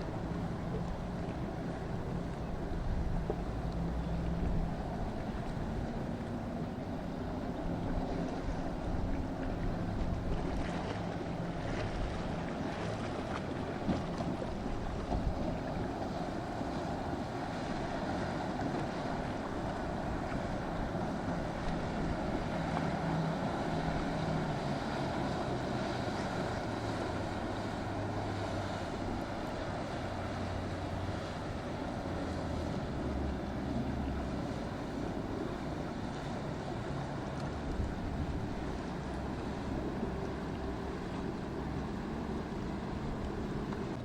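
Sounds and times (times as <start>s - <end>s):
wind on microphone: 0.0s - 12.6s, 13.7s - 31.6s, 37.6s - 39.2s
boat engines running: 0.0s - 44.0s
surf: 0.0s - 44.0s
waves washing: 0.0s - 44.0s.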